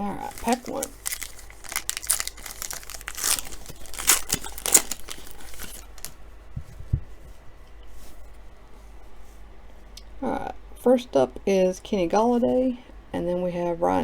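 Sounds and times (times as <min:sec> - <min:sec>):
wrapper crinkling and tearing: 0:00.0 - 0:06.2
soft low thumps: 0:06.5 - 0:07.4.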